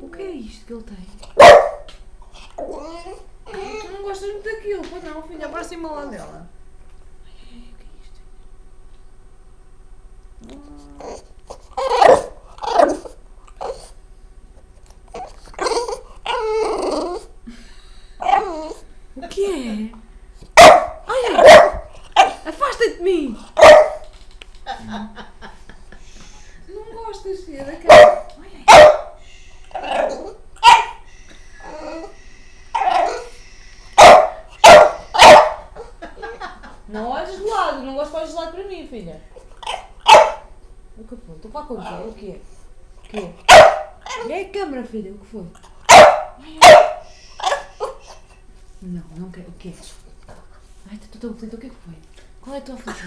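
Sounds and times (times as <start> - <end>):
low room hum: 0.0 - 53.0
dog barking: 1.4 - 1.9, 11.8 - 13.1, 20.6 - 22.4, 23.6 - 24.1, 27.9 - 29.2, 30.0 - 31.0, 34.0 - 35.8, 39.6 - 40.5, 43.4 - 44.3, 45.9 - 48.0
dog whining moan: 2.4 - 4.1, 10.4 - 14.0, 15.1 - 17.4, 18.2 - 18.9, 29.7 - 33.4, 47.0 - 48.4
dog making odd vocal sounds: 29.6 - 35.6, 45.6 - 48.3.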